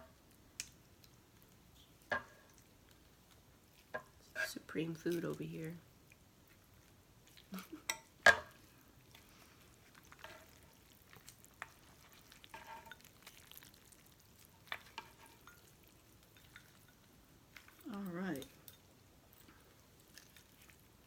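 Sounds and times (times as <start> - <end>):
utensils clinking against a bowl: 7.6 - 8.6, 10.0 - 20.9.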